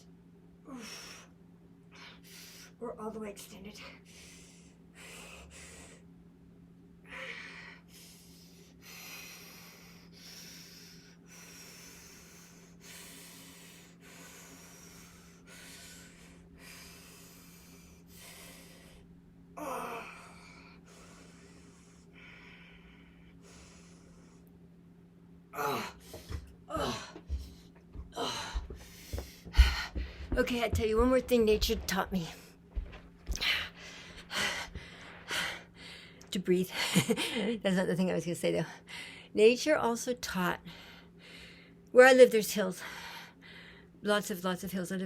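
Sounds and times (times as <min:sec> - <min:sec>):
steady low hum: 0:00.0 - 0:45.0
woman breathing hard: 0:04.0 - 0:06.1, 0:07.0 - 0:24.5, 0:25.6 - 0:30.4, 0:32.8 - 0:36.3.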